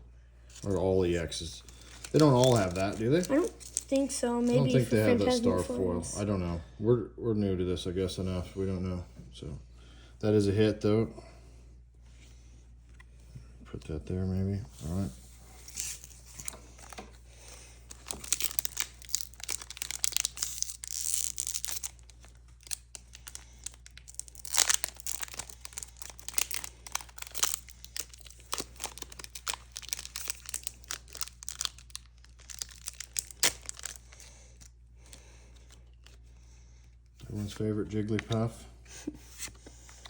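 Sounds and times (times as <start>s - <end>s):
foil wrapper crinkling and tearing: 0.5s - 5.2s, 15.6s - 36.2s.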